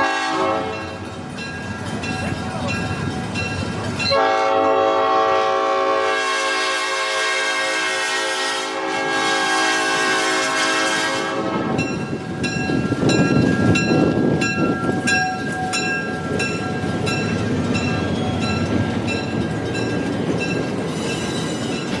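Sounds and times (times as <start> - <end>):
locomotive air horn chord: 0.0 - 0.9, 4.1 - 11.8
bell ringing: 11.8 - 22.0.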